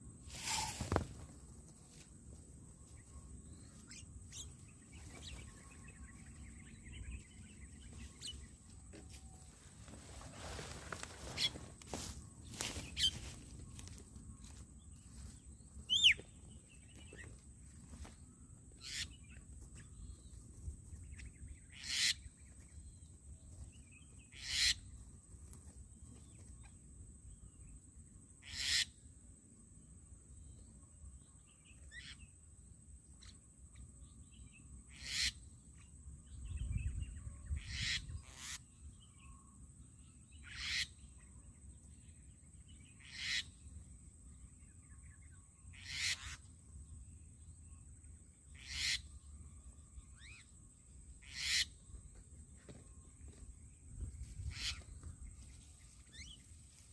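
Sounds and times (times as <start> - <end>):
birds harsh high calls: 10.5 - 13.4, 15.8 - 16.4, 18.8 - 19.4, 21.2 - 22.4, 24.2 - 24.9, 28.4 - 29.0, 34.9 - 35.4, 37.5 - 38.6, 40.4 - 41.0, 43.0 - 43.6, 45.7 - 46.5, 48.5 - 49.1, 51.2 - 51.8, 54.4 - 55.0.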